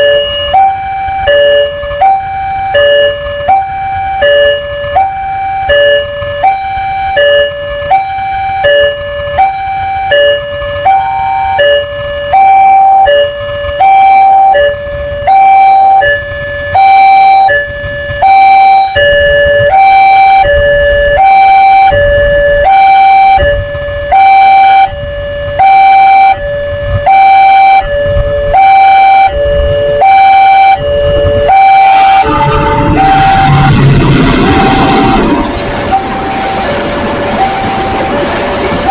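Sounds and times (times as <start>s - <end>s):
level crossing alarm two-tone signal: 0.0s - 38.9s
low rumble: 26.5s - 38.9s.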